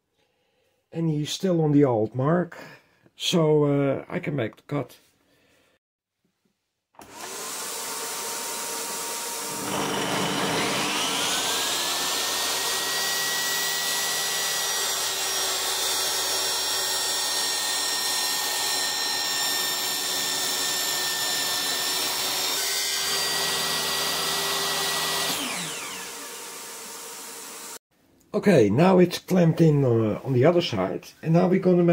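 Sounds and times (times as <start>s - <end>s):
table saw motor whine: 7.0s - 27.8s.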